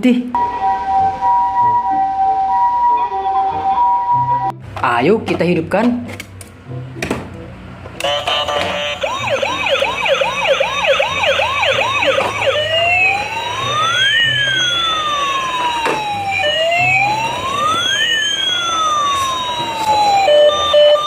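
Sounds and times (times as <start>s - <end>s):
toy siren yelping and wailing: 8.0s - 21.0s.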